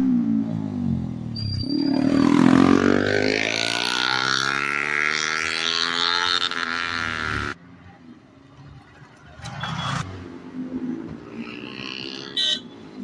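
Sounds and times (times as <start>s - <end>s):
motorcycle engine revving: 0.0s - 7.6s.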